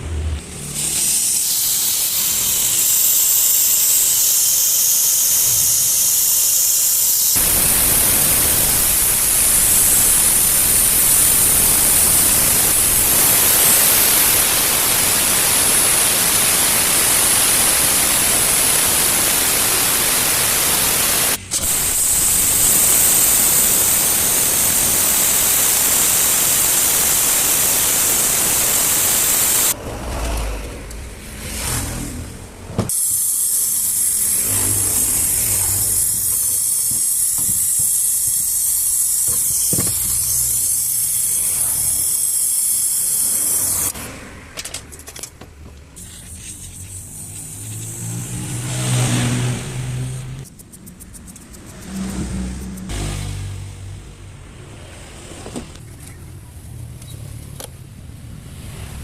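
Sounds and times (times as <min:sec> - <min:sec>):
compressed gas hissing through tubing: 0:00.4 - 0:30.5, 0:32.9 - 0:44.1, 0:46.0 - 0:50.7.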